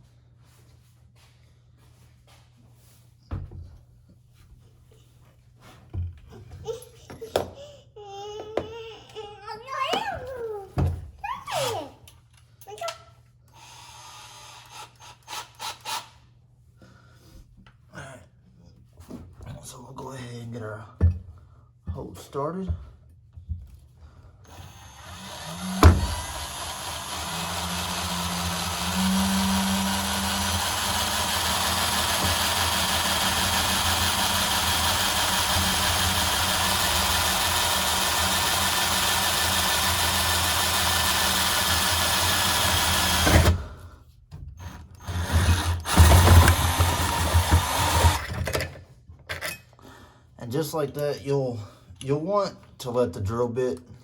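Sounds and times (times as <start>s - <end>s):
power drill boring through metal: 13.6s - 16.1s, 24.5s - 43.8s, 44.6s - 48.6s.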